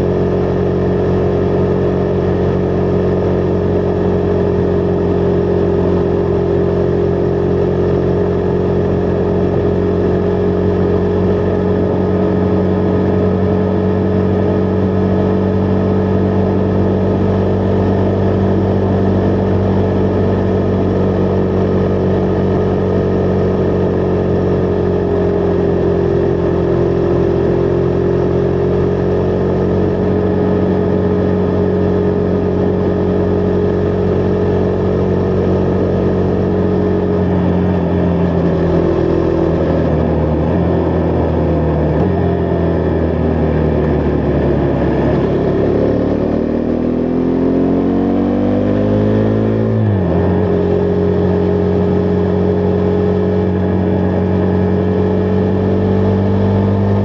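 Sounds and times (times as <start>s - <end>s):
motorcycle engine cruising: 0.0s - 57.0s.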